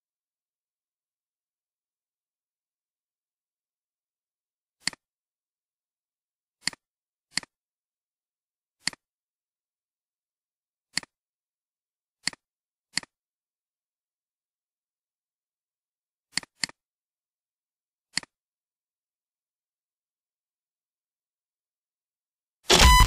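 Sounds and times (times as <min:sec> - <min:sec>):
computer mouse clicks: 0:04.8 - 0:05.0, 0:06.6 - 0:07.6, 0:08.8 - 0:09.0, 0:10.9 - 0:11.2, 0:12.2 - 0:13.2, 0:16.3 - 0:16.8, 0:18.1 - 0:18.4.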